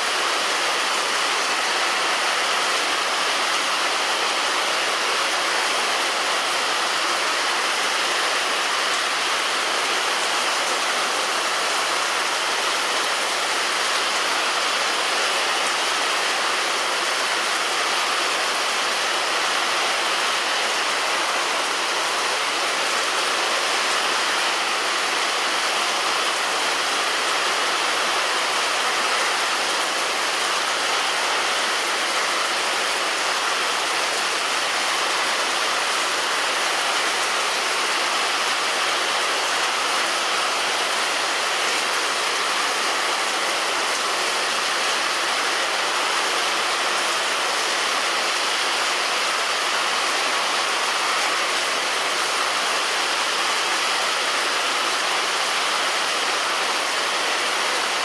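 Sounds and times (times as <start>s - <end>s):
heavy rain on a roof: 0.0s - 58.0s.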